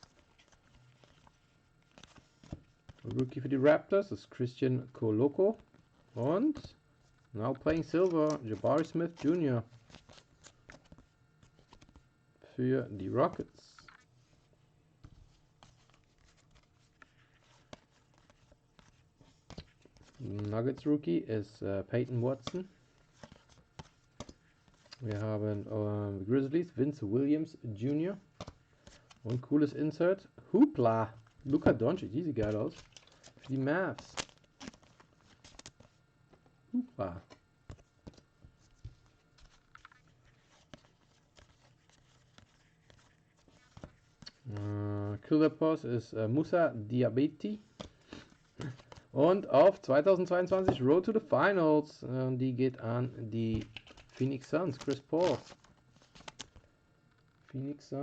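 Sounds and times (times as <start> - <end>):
trading cards clicking and rustling: 7.5 - 12.1, 15.1 - 21.0, 22.1 - 25.1, 31.3 - 44.8, 47.8 - 50.9, 53.4 - 57.5.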